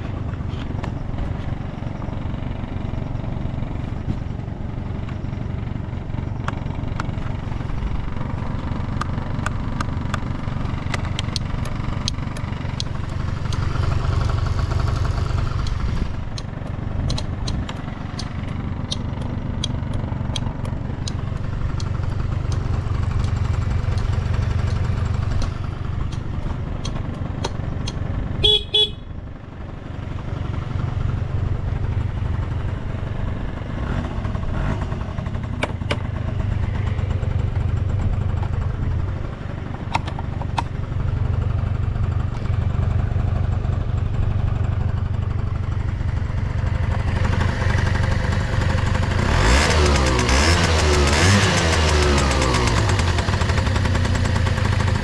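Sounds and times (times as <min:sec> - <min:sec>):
scooter engine idling: 0:00.0 - 0:55.0
regular clicks: 0:08.9 - 0:28.1
scooter horn beep: 0:28.4 - 0:29.2.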